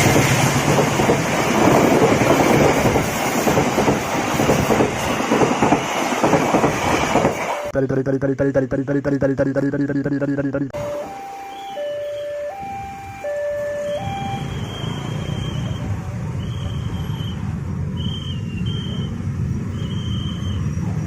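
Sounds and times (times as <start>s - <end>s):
short high beeping tones: 10.3s - 15.0s
two-tone hi-lo siren: 10.7s - 16.0s.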